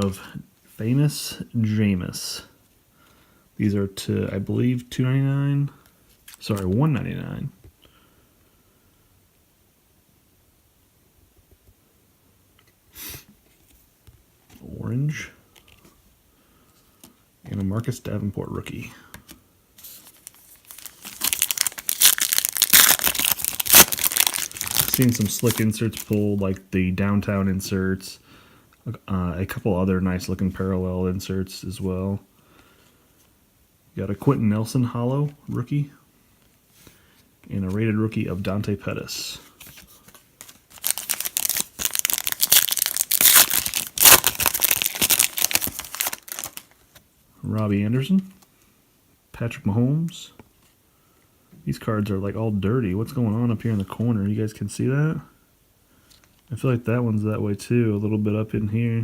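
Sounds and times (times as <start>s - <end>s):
card pack wrapper tearing: 20.0s - 26.2s, 40.1s - 46.9s.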